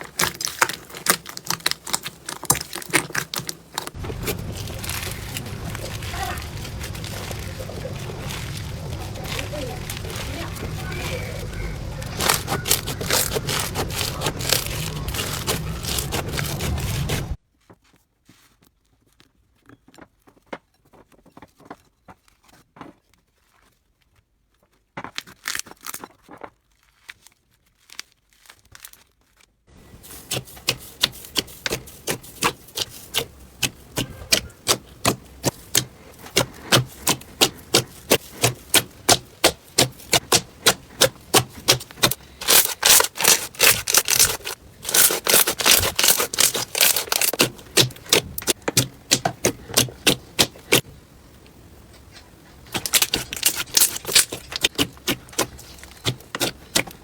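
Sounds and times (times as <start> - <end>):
slime crackling and popping: 0.0 - 17.4, 30.3 - 50.8, 52.7 - 57.0.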